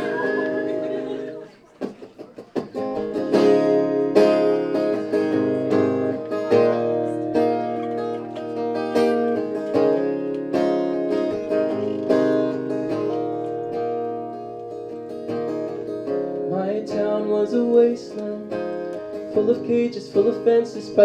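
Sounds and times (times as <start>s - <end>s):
plucked string instrument chords: 2.6s - 21.0s.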